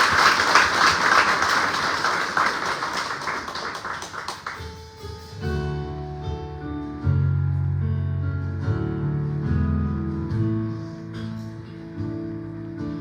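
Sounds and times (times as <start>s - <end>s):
congregation applauding: 0.0s - 4.9s
acoustic guitar: 4.3s - 13.0s.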